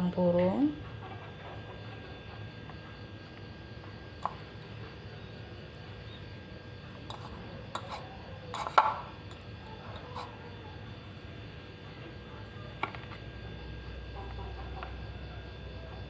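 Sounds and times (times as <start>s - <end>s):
steady low hum: 0.0s - 16.0s
utensils tapping on a dish: 7.2s - 9.4s.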